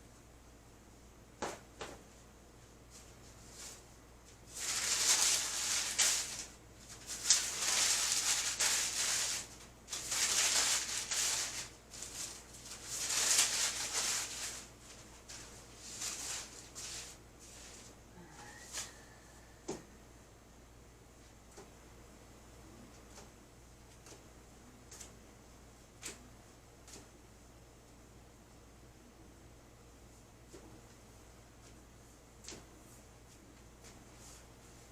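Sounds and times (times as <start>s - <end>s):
dry rustling: 4.4s - 18.0s.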